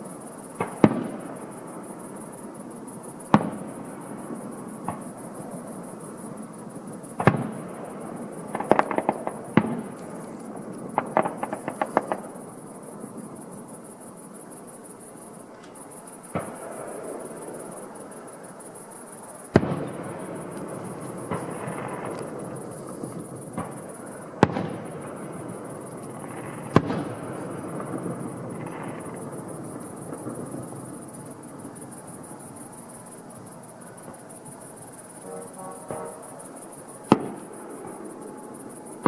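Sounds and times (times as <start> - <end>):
crickets chirping: 0.0 - 39.0
fireworks bursting with bangs: 0.0 - 39.0
fireworks crackling: 0.0 - 39.0.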